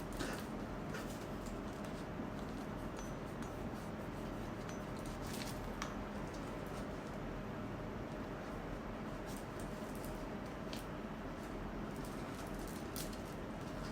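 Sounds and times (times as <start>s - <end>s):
low hum and hiss: 0.0s - 13.9s.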